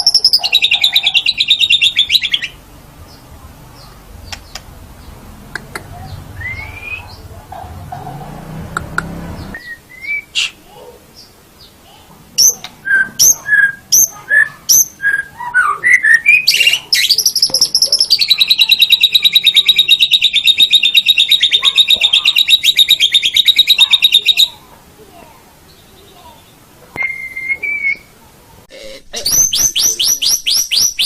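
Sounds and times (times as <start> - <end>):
bird whistling and trilling: 0.0 - 2.6, 6.3 - 7.2, 9.5 - 10.6, 12.4 - 24.6, 27.0 - 28.1, 29.2 - 31.0.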